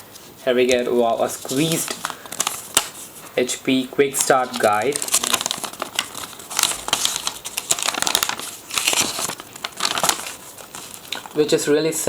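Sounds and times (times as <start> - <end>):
paper crinkling: 0.0 - 12.0.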